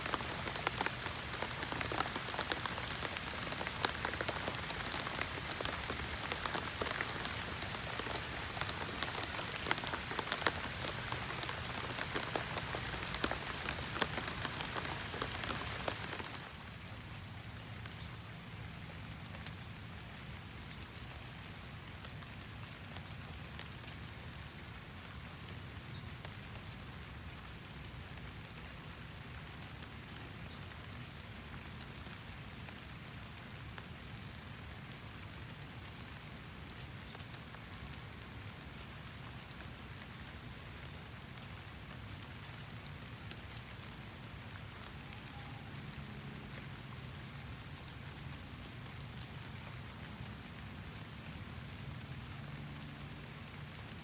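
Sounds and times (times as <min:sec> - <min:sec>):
steady rain pattering: 0:00.0 - 0:54.0.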